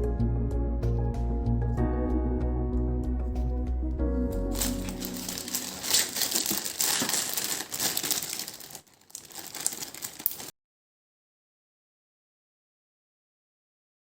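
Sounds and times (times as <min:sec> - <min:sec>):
background music: 0:00.0 - 0:06.6
packaging crinkling: 0:04.5 - 0:10.5.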